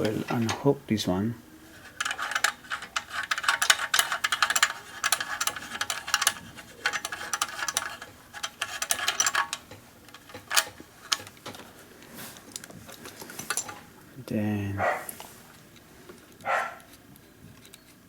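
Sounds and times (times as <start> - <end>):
cables and connectors rattling: 1.6 - 14.0.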